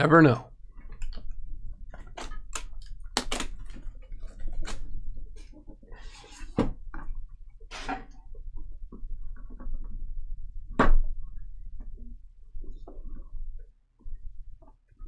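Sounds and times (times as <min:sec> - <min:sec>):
cards tapping and clicking: 0:02.6 - 0:03.8.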